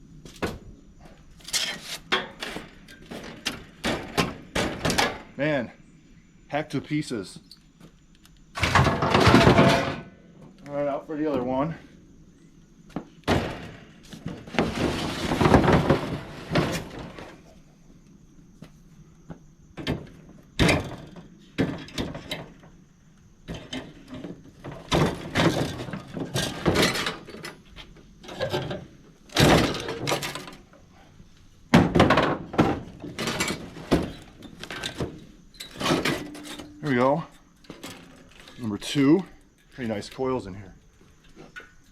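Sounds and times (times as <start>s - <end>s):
metal thunks and knocks: 2.1s - 5.4s, 8.6s - 10.2s, 12.9s - 17.3s, 19.8s - 22.8s, 23.4s - 27.6s, 28.2s - 30.6s, 31.7s - 36.8s.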